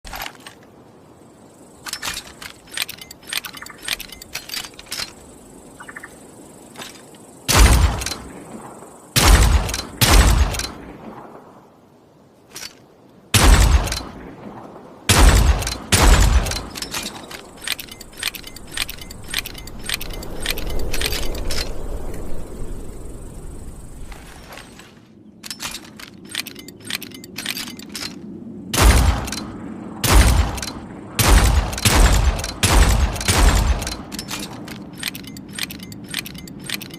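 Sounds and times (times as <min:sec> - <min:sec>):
revolver gunshots: 0:07.5 - 0:08.3, 0:09.2 - 0:10.9, 0:13.4 - 0:14.3, 0:15.1 - 0:17.7, 0:28.8 - 0:34.1
revolver handling clicks: 0:15.6 - 0:21.7, 0:25.4 - 0:28.3, 0:31.7 - 0:36.9.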